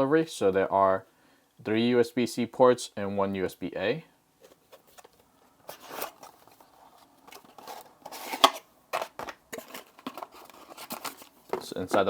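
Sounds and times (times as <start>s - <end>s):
cardboard and plastic rustling: 4.4s - 12.0s.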